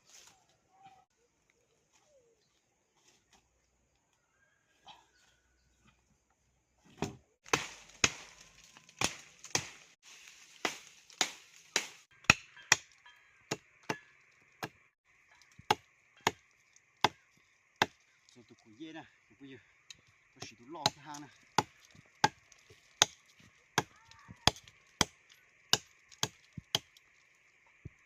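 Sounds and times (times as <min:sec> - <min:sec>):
wood being chopped: 0:07.0 - 0:09.9, 0:10.6 - 0:14.8, 0:15.5 - 0:17.2, 0:17.8 - 0:18.0, 0:20.4 - 0:27.0.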